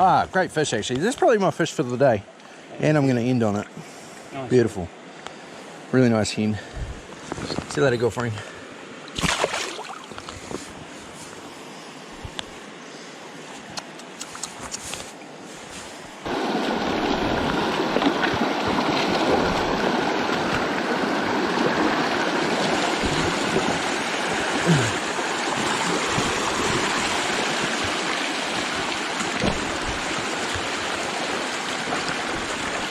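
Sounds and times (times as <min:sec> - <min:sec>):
river water rushing over rocks: 0:08.9 - 0:10.3, 0:16.2 - 0:32.9.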